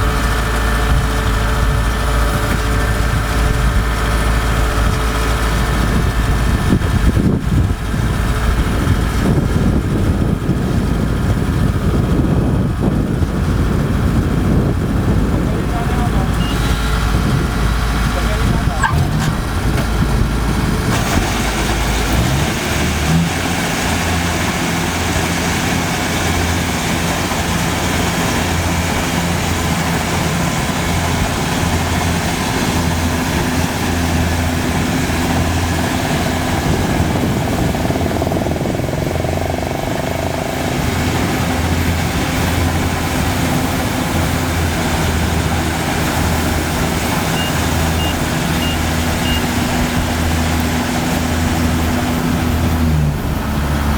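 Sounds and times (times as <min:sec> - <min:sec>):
combine harvester diesel engine: 0:00.0 - 0:53.9
short high beeps: 0:16.3 - 0:16.9, 0:47.4 - 0:49.5.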